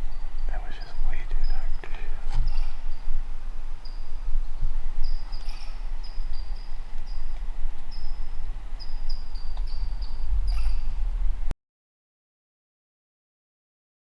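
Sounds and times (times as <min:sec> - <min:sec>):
wind buffeting microphone: 0:00.0 - 0:11.5
short high chirps: 0:08.8 - 0:11.0.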